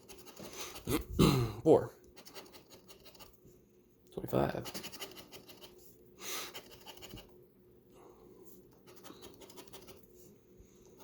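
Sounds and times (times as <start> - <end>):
scratching lottery ticket: 0.0 - 0.9, 2.1 - 3.4, 4.6 - 5.8, 6.4 - 7.3, 8.8 - 10.1
person breathing: 0.4 - 1.6, 6.2 - 6.7, 7.9 - 9.5.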